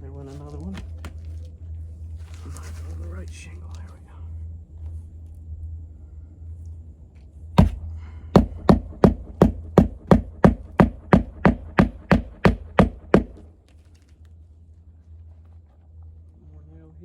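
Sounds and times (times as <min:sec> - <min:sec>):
hammer driving nails into shingle: 0:07.6 - 0:07.8, 0:08.4 - 0:13.5.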